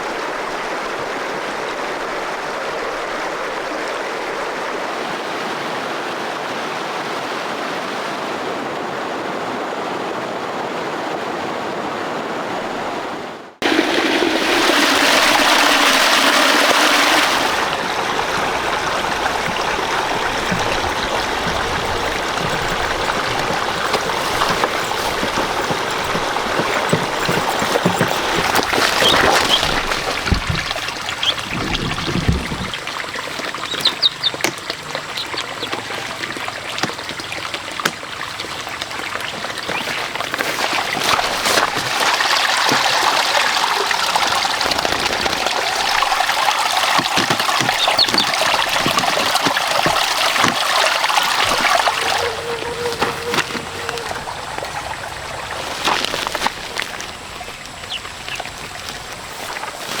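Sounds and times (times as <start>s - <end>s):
water trickling and splashing: 13.6s - 60.0s.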